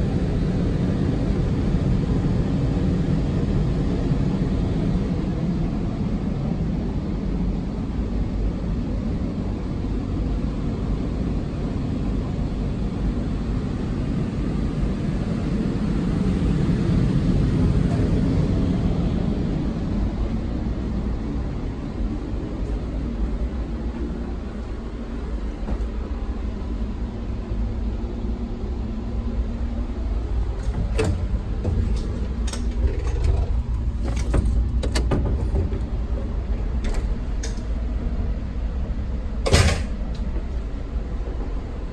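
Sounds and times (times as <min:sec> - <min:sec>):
machinery rumbling: 0:16.2 - 0:41.9
sharp clicks and creaks: 0:30.6 - 0:36.0.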